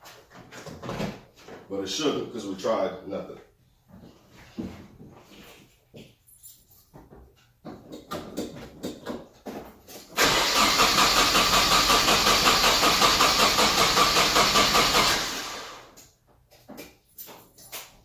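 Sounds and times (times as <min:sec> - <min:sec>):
car engine cranking: 0:10.2 - 0:15.9.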